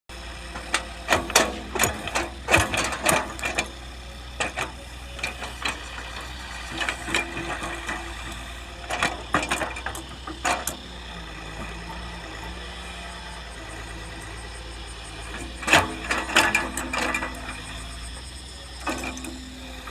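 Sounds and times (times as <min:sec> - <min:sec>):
excavator engine running: 0:00.1 - 0:19.9
metallic clanks and knocks: 0:00.5 - 0:10.9, 0:15.2 - 0:19.9.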